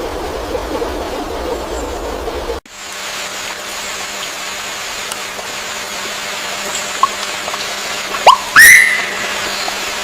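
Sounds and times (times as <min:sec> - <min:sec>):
steady hiss: 0:02.7 - 0:10.0
loud whistled bird note: 0:08.2 - 0:09.8
bird chirps: 0:08.2 - 0:10.0.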